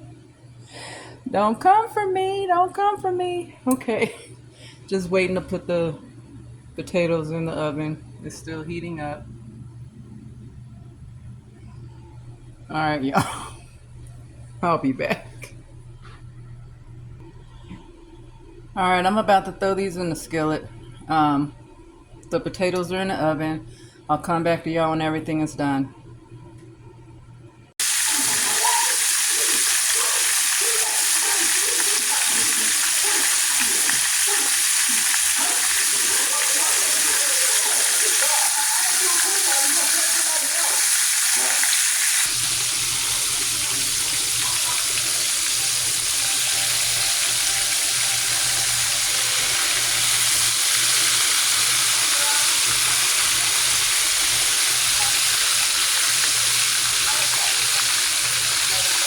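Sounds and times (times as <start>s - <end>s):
meat sizzling in a skillet: 27.8s - 59.0s.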